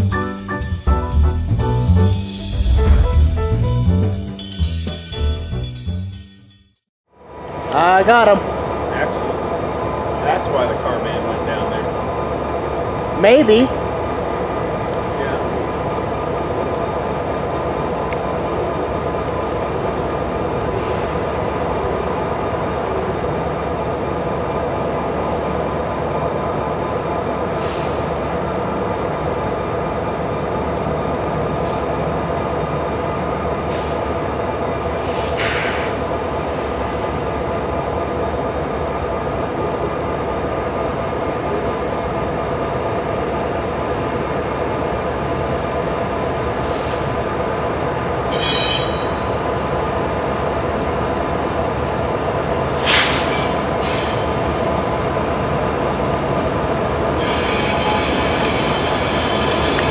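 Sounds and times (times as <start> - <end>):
freight train rumbling: 0.0 - 6.0, 7.3 - 59.9
wheel squeal: 46.0 - 49.5, 52.7 - 54.8, 55.4 - 59.9.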